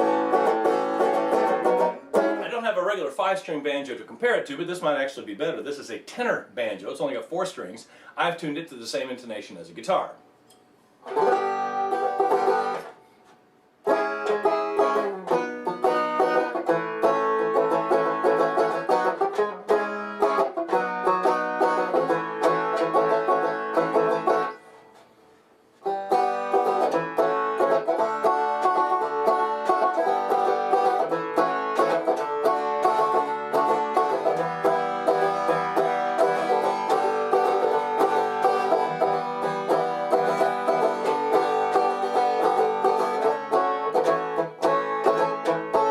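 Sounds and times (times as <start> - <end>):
banjo playing: 0.0 - 3.1, 11.0 - 13.1, 13.8 - 24.8, 25.8 - 45.9.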